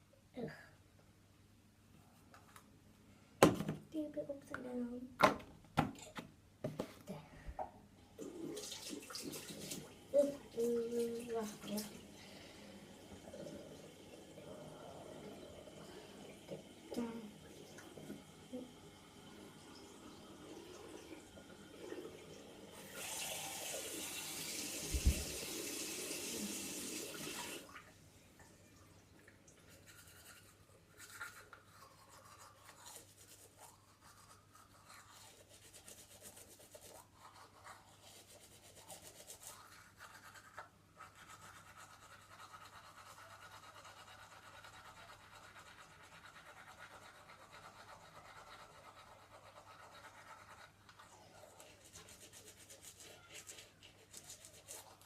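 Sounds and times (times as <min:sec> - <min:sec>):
water running into a sink: 0:08.2 - 0:28.0
toothbrush scrubbing: 0:29.6 - 0:55.0.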